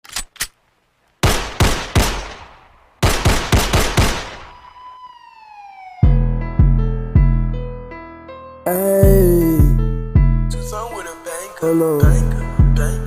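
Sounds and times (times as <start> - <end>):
gun clicks: 0.0 - 4.6
gunshots ringing out: 1.2 - 4.8.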